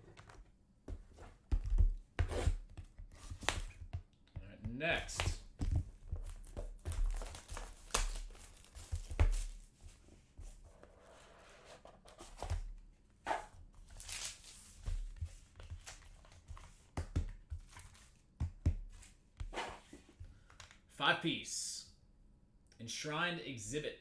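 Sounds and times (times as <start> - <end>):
cards tapping and clicking: 0.1 - 9.6, 14.0 - 20.8
wrapper crinkling and tearing: 6.8 - 9.7.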